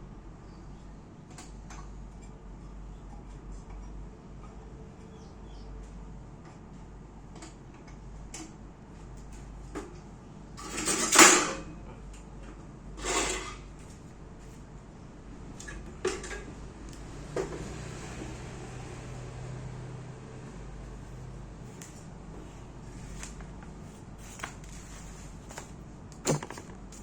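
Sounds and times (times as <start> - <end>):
objects clicking and knocking: 25.4 - 27.0.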